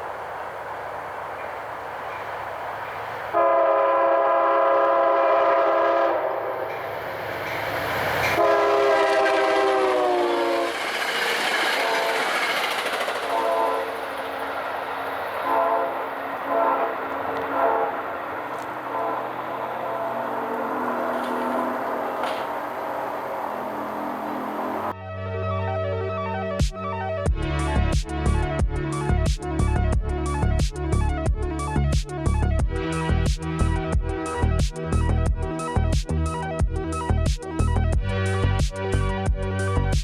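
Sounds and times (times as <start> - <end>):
train rumble: 0.0 - 25.0, 27.3 - 40.0
train air horn blasts: 3.3 - 6.8, 8.2 - 10.8, 11.7 - 14.3, 15.4 - 24.9.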